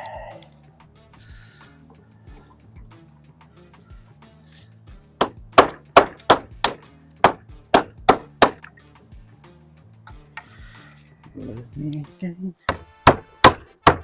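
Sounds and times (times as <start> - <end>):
background music: 0.0 - 14.0
sharp hand tool knocks: 5.2 - 8.6, 12.7 - 14.0.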